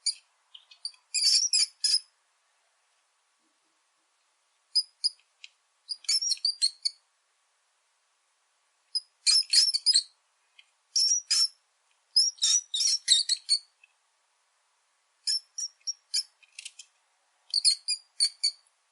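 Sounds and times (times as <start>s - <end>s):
mouse squeaking: 0.0s - 2.1s, 4.8s - 5.2s, 5.9s - 7.0s, 9.0s - 10.2s, 11.0s - 11.6s, 12.2s - 13.7s, 15.2s - 16.8s, 17.5s - 18.6s.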